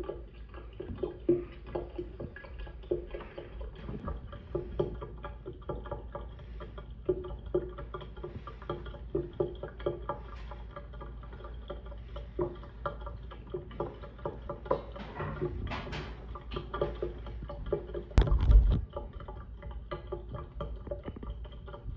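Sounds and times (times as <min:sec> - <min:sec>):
small water splashes and drips: 0:00.0 - 0:21.9
deep bump or rumble: 0:18.2 - 0:18.9.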